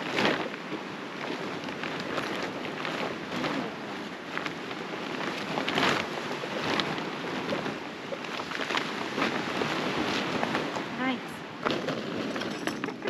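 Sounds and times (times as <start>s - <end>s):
rustles and knocks: 11.6s - 13.0s.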